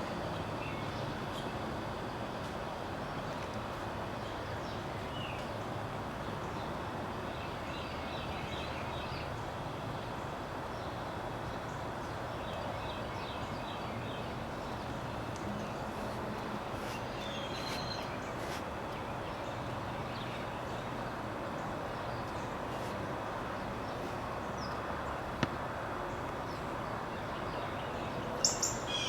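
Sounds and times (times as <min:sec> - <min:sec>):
low outdoor rumble: 0:00.0 - 0:28.4
small birds chirping: 0:10.2 - 0:25.2, 0:26.0 - 0:29.0.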